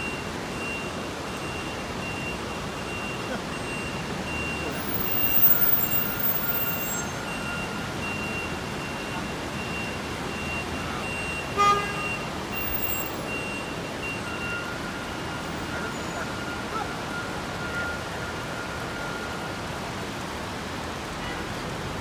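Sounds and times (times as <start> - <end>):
faint high beep: 0.0 - 19.5
road traffic noise: 0.0 - 22.0
vehicle horn toot: 11.5 - 13.1.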